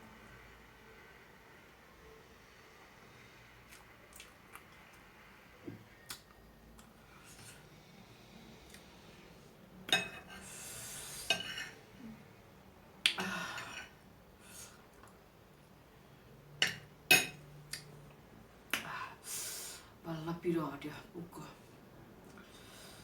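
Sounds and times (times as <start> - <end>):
spoon clinking and scraping dish: 9.9 - 10.3, 11.2 - 11.8.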